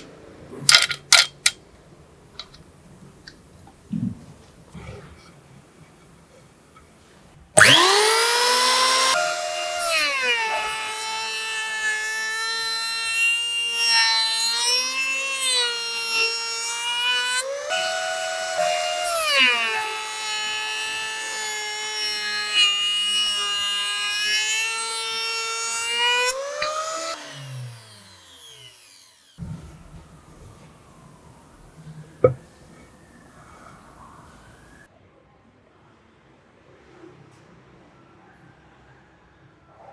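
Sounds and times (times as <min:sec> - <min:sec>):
electric planer whine: 0:07.6 - 0:34.8.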